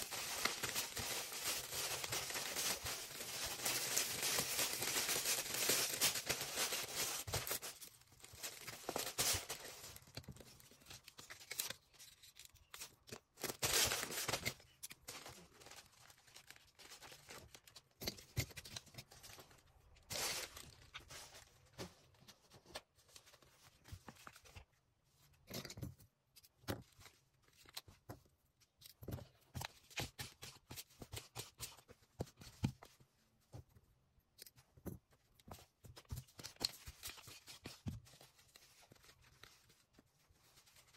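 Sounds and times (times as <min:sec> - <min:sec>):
packaging rustling and crinkling: 0:00.0 - 0:24.6.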